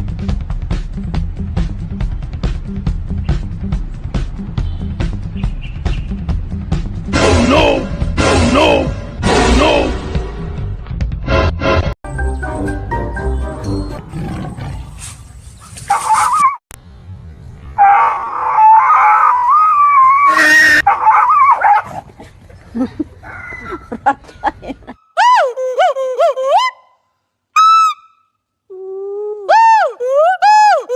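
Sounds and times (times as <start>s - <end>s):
dog howling and whining: 17.8s - 21.8s.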